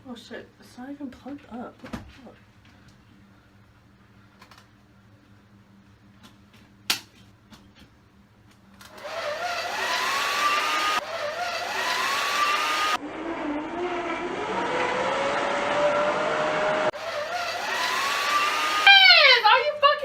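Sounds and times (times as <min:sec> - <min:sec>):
hair dryer blowing and whining: 0:08.9 - 0:19.6.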